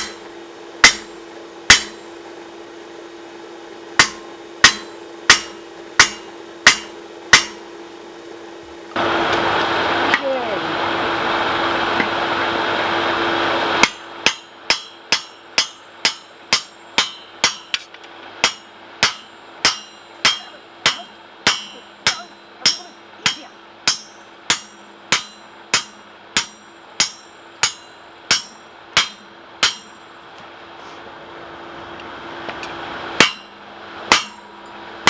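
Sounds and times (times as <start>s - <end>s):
hammer striking steel on anvil: 0.0s - 2.2s, 4.0s - 7.8s, 13.8s - 30.2s, 33.2s - 34.5s.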